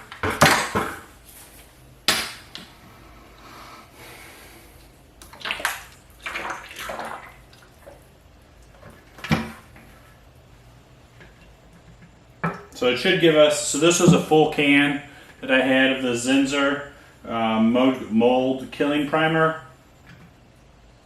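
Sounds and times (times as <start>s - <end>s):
liquid pouring and sloshing: 5.2s - 10.4s.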